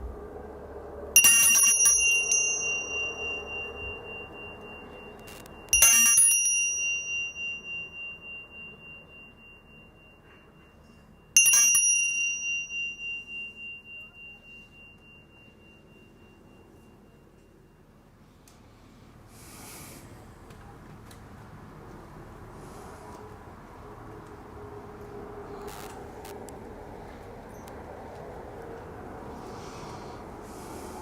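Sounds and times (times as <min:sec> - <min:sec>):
meditation bell ringing: 0:01.2 - 0:18.0.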